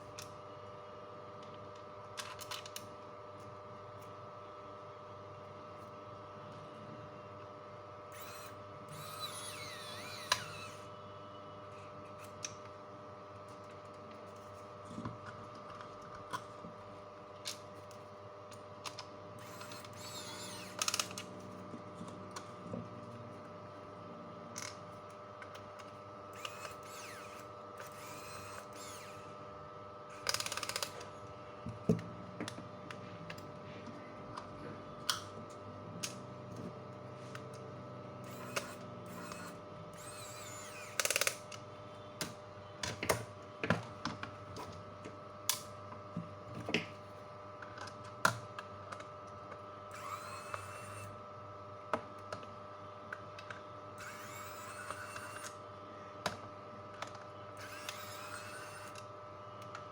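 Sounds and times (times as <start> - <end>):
steady electrical hum: 0.0 - 59.9.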